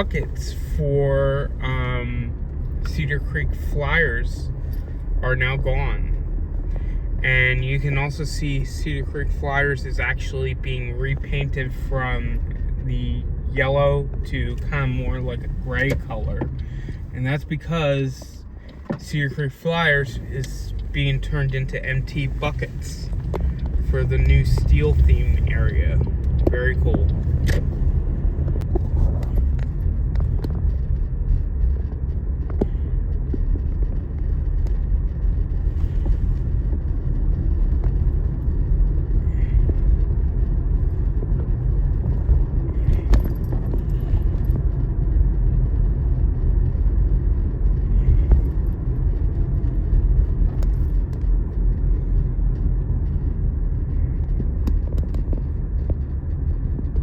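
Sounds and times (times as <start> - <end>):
car driving rumble: 0.0 - 57.0
faint rattles: 19.9 - 45.1.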